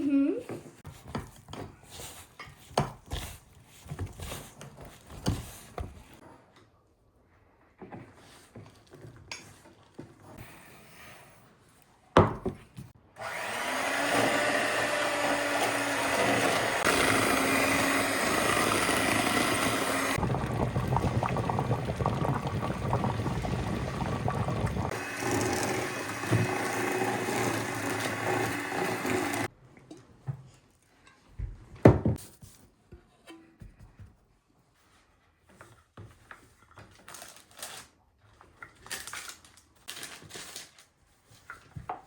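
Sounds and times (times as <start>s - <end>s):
electric kitchen mixer running: 13.2s - 20.8s, 23.8s - 29.5s.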